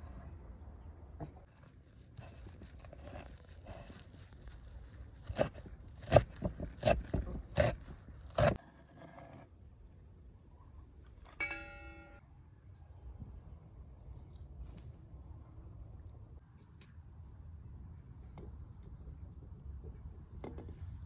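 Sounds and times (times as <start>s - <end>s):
soft rustling and scraping: 1.4s - 7.2s.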